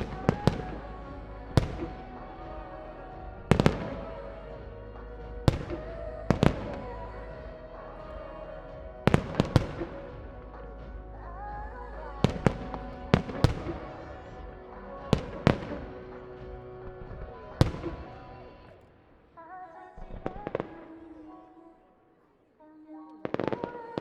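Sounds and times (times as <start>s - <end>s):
pop song over loudspeakers: 0.0s - 24.0s.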